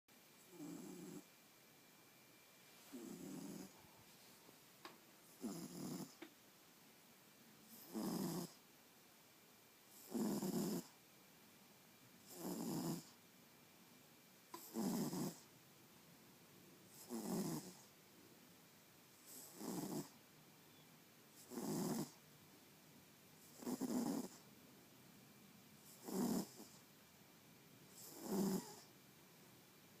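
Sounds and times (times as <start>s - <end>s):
quiet breathing: 2.6s - 6.4s
person snoring: 2.9s - 3.8s, 5.4s - 6.2s, 7.7s - 8.6s, 10.0s - 10.9s, 12.3s - 13.1s, 14.6s - 15.4s, 17.0s - 17.8s, 19.3s - 20.1s, 21.4s - 22.2s, 23.5s - 24.4s, 25.9s - 26.8s, 28.0s - 28.9s.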